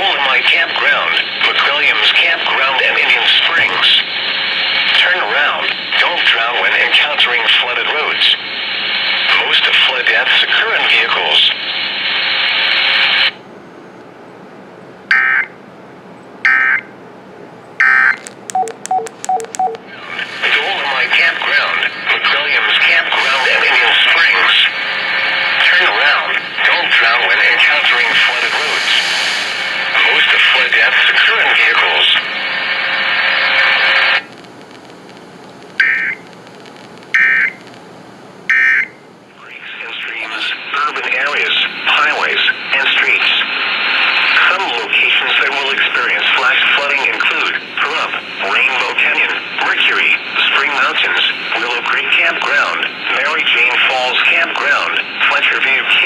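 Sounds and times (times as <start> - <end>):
radio hiss: 0.0 - 13.4, 19.2 - 37.8, 39.3 - 56.0
short two-tone beeps: 17.8 - 19.8
warbling data bursts: 17.8 - 32.2.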